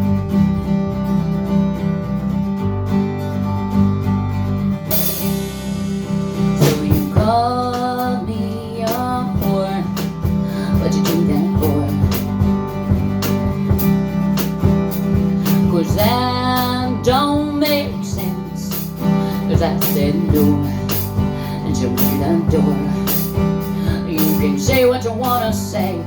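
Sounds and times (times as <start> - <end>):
acoustic guitar strumming: 0.0 - 26.0
person singing: 6.4 - 12.5, 15.4 - 26.0.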